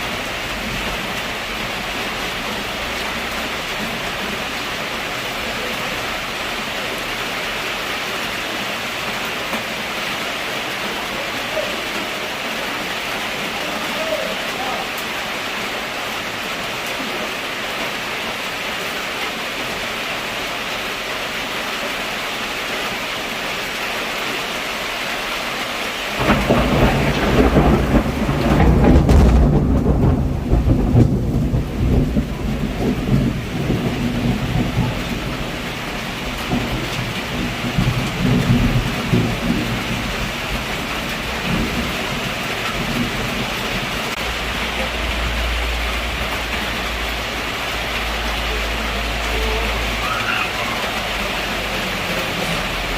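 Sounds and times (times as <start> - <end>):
heavy rain falling: 0.0 - 52.9
thunder rumbling: 26.2 - 52.9.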